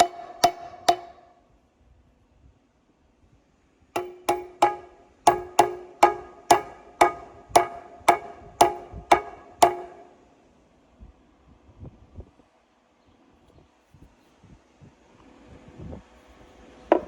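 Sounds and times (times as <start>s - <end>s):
hammer blows on metal: 0.0s - 1.4s, 4.0s - 10.2s.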